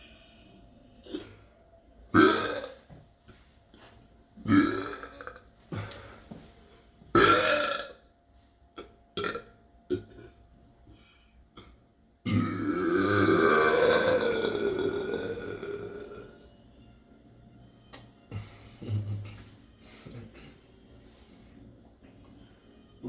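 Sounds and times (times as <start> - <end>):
person burping: 2.2 - 2.8, 4.5 - 6.0, 7.2 - 8.0, 8.8 - 10.4, 11.6 - 16.4.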